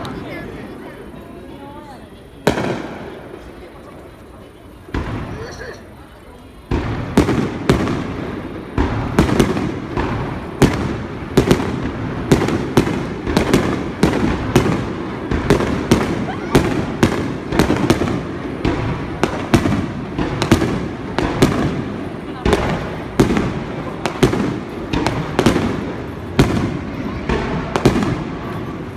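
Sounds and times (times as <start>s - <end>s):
rumble of overlapping reports: 0.0s - 28.8s
fireworks shells bursting: 2.4s - 28.9s.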